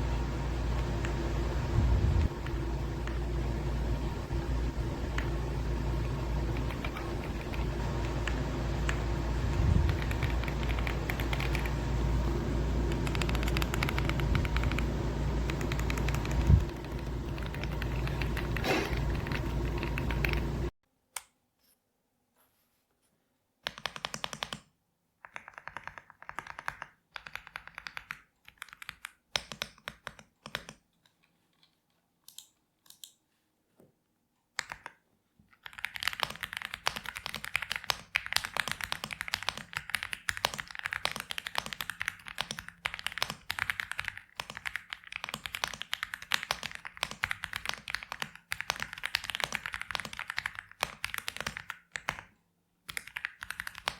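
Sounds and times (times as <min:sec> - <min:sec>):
typing on mechanical keyboard: 0:06.0 - 0:09.0, 0:09.8 - 0:11.8, 0:12.8 - 0:20.6, 0:23.6 - 0:33.2, 0:34.5 - 0:53.9.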